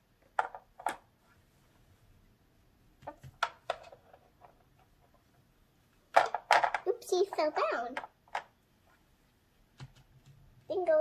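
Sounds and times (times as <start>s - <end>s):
plastic toy figures clicking: 6.2s - 8.5s.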